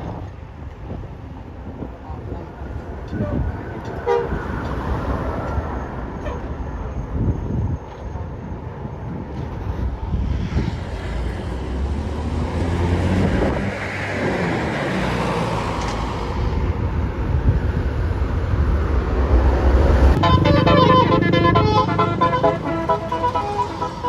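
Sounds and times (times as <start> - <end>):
vehicle passing: 10.2 - 16.9, 17.8 - 24.0
deep engine rumble: 16.2 - 24.0.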